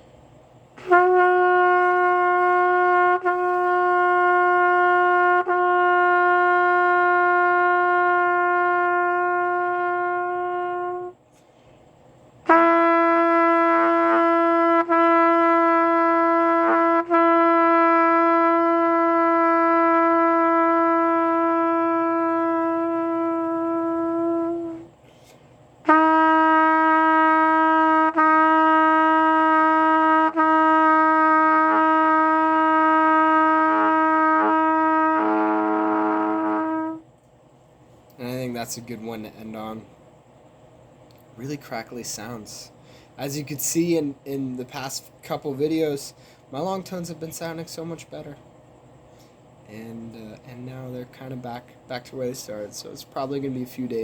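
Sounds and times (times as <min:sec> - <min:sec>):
trumpet long tones: 0:00.8 - 0:11.5, 0:12.4 - 0:37.2.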